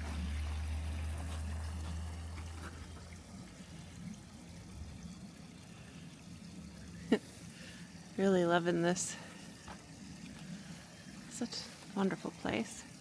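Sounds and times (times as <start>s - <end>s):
waterfall splashing and trickling: 0.0s - 13.0s.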